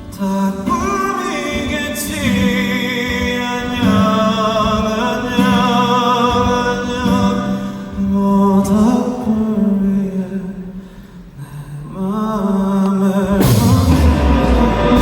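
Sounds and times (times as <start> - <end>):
live band music: 13.3 - 15.0.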